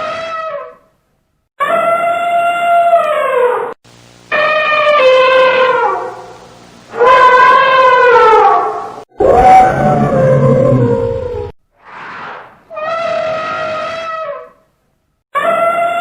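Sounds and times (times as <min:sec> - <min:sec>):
low rumble: 0:09.2 - 0:11.6.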